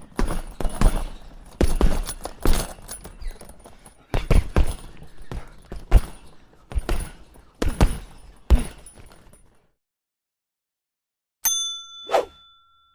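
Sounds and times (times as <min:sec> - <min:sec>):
gloves punching heavy bag: 0:00.0 - 0:09.6
boxing bell strike: 0:11.5 - 0:12.9.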